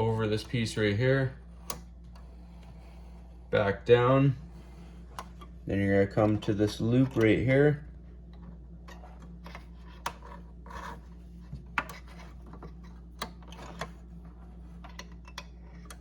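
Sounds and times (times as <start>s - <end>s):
faint steady hum: 0.0s - 16.0s
thread rubbing and scraping: 8.9s - 13.0s.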